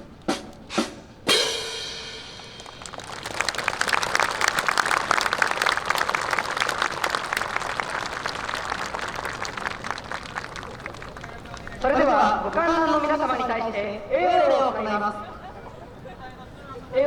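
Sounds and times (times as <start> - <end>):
loud drum stroke: 0.7 - 2.6
crowd applauding: 2.3 - 13.4.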